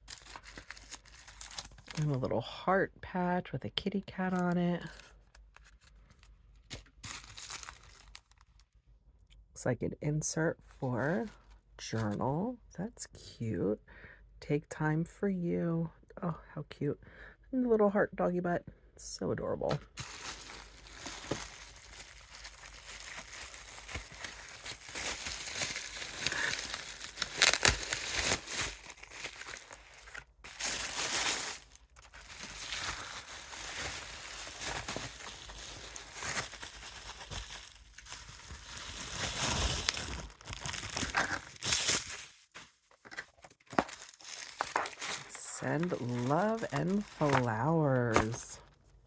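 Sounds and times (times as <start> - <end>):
packaging crinkling: 0.0 - 2.0, 4.8 - 8.7, 19.9 - 48.5.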